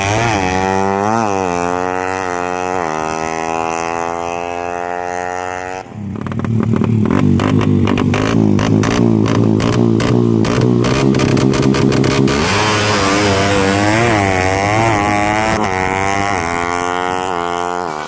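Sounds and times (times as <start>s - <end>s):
motorcycle engine revving: 0.0s - 18.0s.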